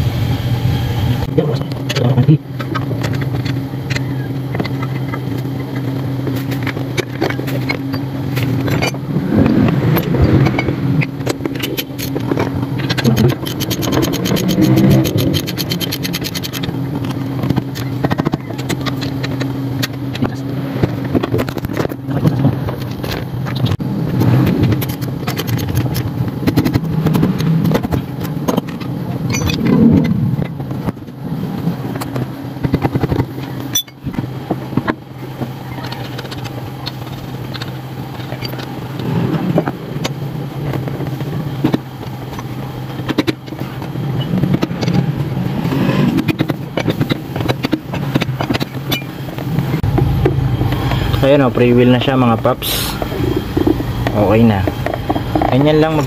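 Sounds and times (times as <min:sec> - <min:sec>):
engine running: 0:00.0 - 0:56.0
hand tools clicking on metal: 0:10.0 - 0:20.3.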